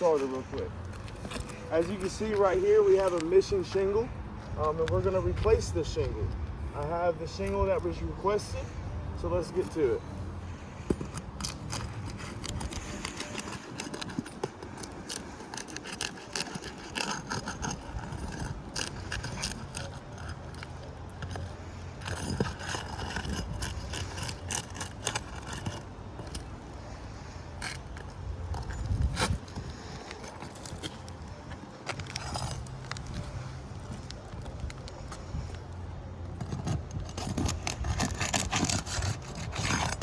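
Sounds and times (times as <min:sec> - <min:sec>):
scraping and clicking on roof shingles: 0:10.5 - 0:27.0, 0:27.6 - 0:35.6, 0:36.3 - 0:40.0.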